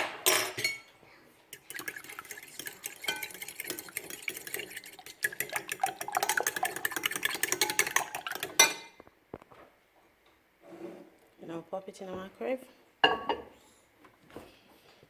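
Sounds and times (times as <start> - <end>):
utensil clinking against bowl: 1.5 - 9.0.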